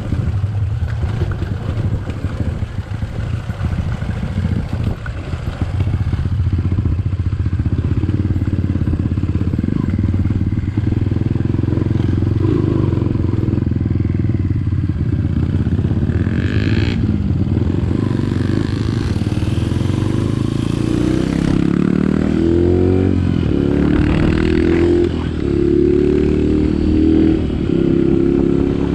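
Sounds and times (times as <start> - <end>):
motorcycle engine running: 0.0 - 28.9.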